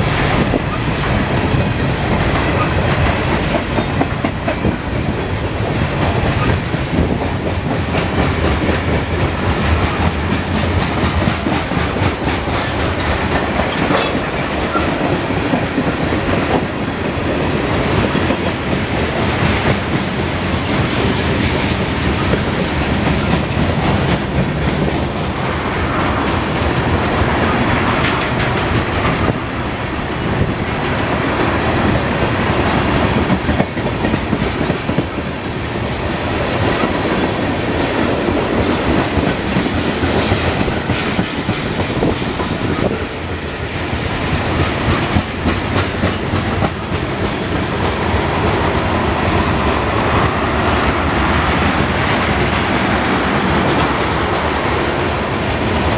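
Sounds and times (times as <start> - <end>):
wheels rumbling on rail: 0.0 - 55.9
wheels clicking over rail joints: 17.4 - 48.6.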